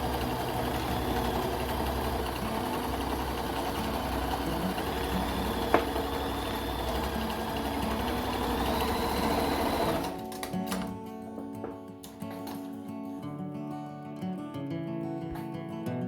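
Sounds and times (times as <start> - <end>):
sewing machine motor whine: 0.0 - 10.9
guitar music: 0.0 - 16.0
sewing machine click: 0.1 - 11.0.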